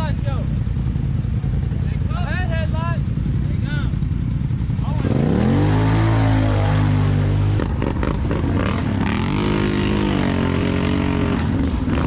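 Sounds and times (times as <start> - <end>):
engine revving: 4.8 - 12.0.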